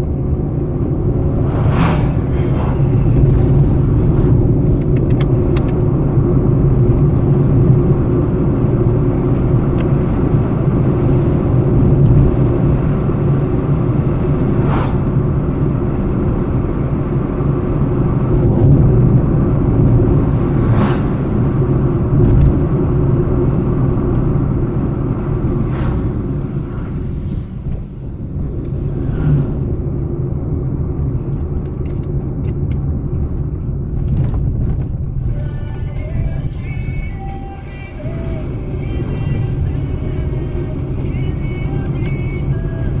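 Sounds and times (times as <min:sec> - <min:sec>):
car engine and road rumble: 0:00.0 - 0:43.0
short whoosh: 0:01.1 - 0:04.7, 0:14.3 - 0:15.3, 0:19.9 - 0:21.6, 0:25.2 - 0:30.0.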